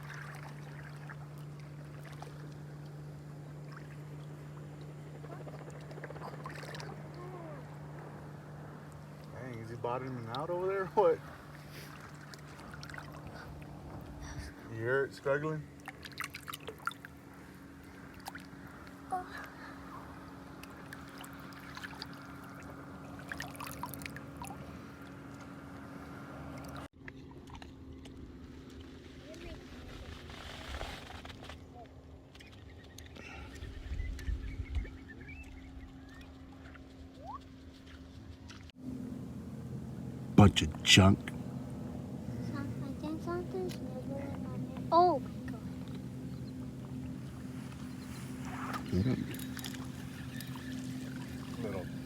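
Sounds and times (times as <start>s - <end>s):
small water splashes: 0.0s - 7.2s, 10.0s - 13.9s, 15.6s - 29.2s, 45.2s - 52.0s
distant outboard motor droning: 0.0s - 52.0s.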